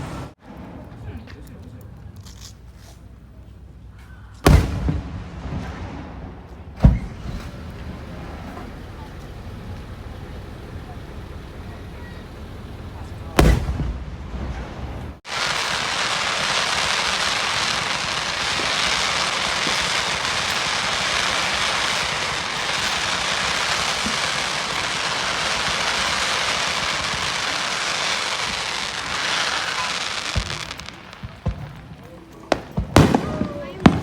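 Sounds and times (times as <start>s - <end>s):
firework boom: 4.4s - 8.7s, 13.3s - 34.0s
steady hiss: 15.3s - 31.4s.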